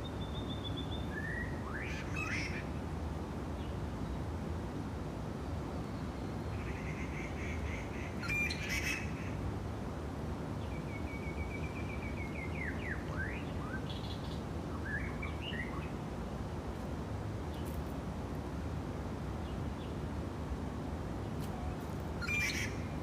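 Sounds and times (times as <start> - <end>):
small bird singing trills: 8.2 - 9.2, 22.2 - 23.0.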